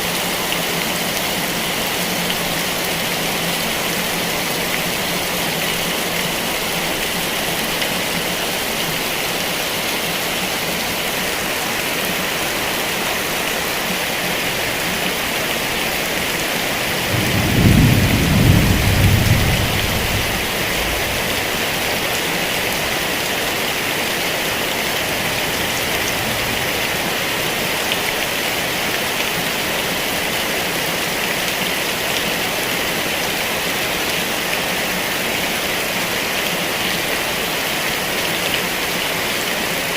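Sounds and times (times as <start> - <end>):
heavy rain falling: 0.0 - 39.9
thunder rumble: 16.7 - 22.0, 24.6 - 28.3.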